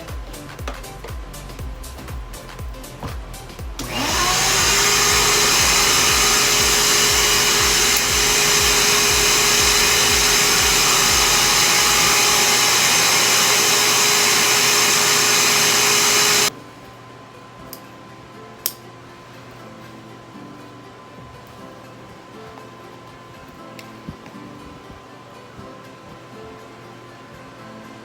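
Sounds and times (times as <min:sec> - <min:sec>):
electric motor and fan running: 0:03.6 - 0:28.0.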